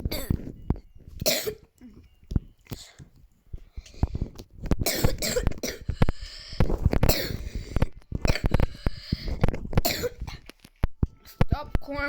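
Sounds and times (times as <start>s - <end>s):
person coughing: 1.2s - 2.0s, 4.8s - 5.9s, 7.1s - 7.6s, 8.3s - 8.6s, 9.8s - 10.4s.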